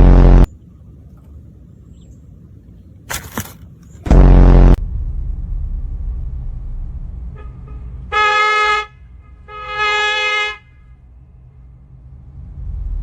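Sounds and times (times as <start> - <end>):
horn toots: 0.0 - 0.5, 4.1 - 4.8, 7.3 - 11.0
loud short blast: 4.1 - 10.1.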